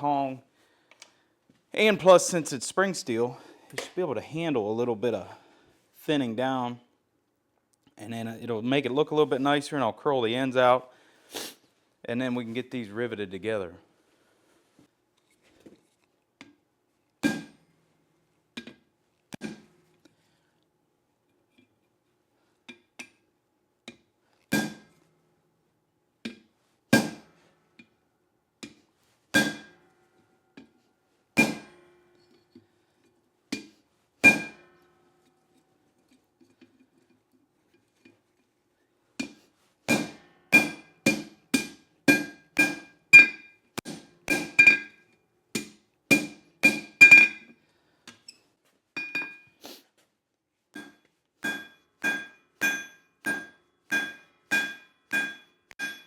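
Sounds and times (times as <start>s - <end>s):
hammer ringing on anvil: 29.4s - 29.9s, 31.4s - 32.3s, 34.2s - 35.1s, 39.9s - 45.0s, 46.1s - 47.5s, 50.8s - 56.0s.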